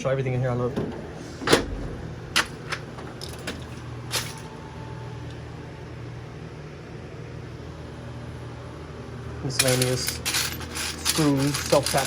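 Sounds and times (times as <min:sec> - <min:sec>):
steady low hum: 0:00.0 - 0:12.0
tool box drawer knock: 0:00.7 - 0:03.7.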